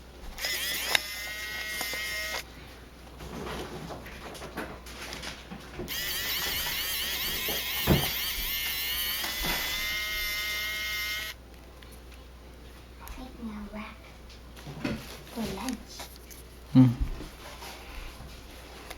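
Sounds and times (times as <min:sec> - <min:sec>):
electric screwdriver motor whining: 0:00.4 - 0:02.5, 0:05.9 - 0:11.4.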